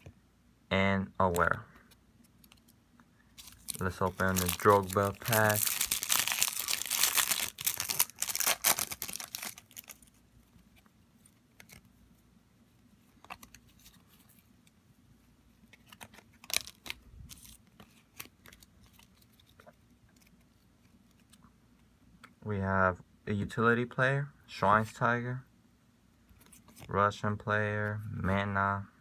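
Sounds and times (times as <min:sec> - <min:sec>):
cards clicking and rustling: 0:01.2 - 0:02.8, 0:03.4 - 0:11.9, 0:13.0 - 0:14.7, 0:15.6 - 0:21.4
card wrapper tearing and crinkling: 0:03.4 - 0:10.2, 0:15.8 - 0:19.6.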